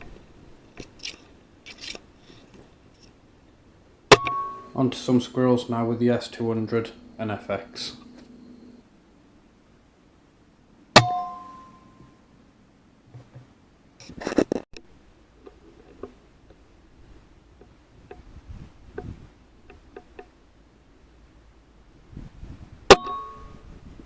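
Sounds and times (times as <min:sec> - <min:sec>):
sharp metallic clang: 0:04.1 - 0:05.1, 0:11.0 - 0:12.2, 0:22.9 - 0:23.6.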